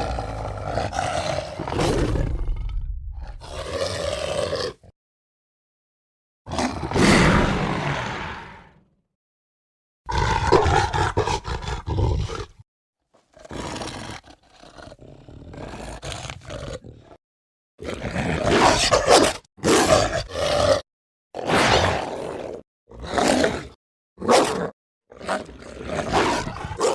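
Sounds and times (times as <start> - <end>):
creature roaring: 0.0 - 4.9, 6.5 - 8.8, 10.1 - 12.6
creature snarling and growling: 0.0 - 4.9, 6.5 - 8.8, 10.1 - 12.6, 13.3 - 17.2, 25.2 - 26.9.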